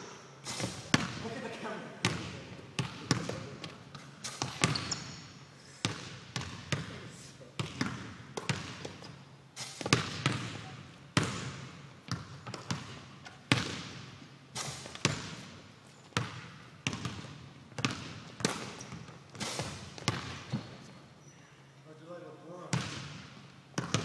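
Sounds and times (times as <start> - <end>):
basketball bouncing on hard court: 0.7 - 1.2, 2.0 - 5.2, 5.8 - 7.0, 7.6 - 9.2, 9.8 - 20.9, 22.7 - 24.0.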